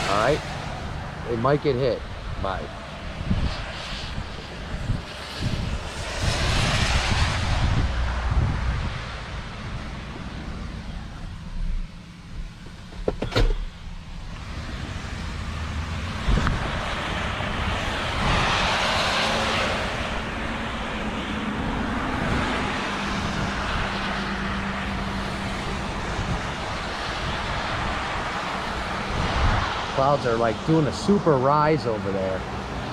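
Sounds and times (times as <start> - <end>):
tyre and wind noise: 0.0 - 31.3
vehicle motor rumble: 7.6 - 18.8.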